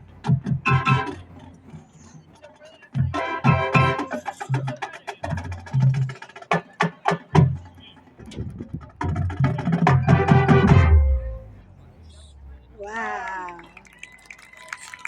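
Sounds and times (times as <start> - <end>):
drumline hits: 0.0 - 1.3, 2.9 - 11.4
marching band chord: 3.1 - 4.4, 10.0 - 11.5.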